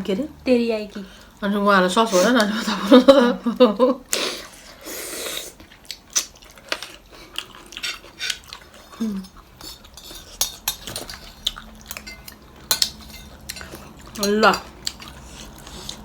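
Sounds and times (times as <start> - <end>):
chewing: 5.5 - 16.0
utensils clinking against dishes: 7.8 - 15.2.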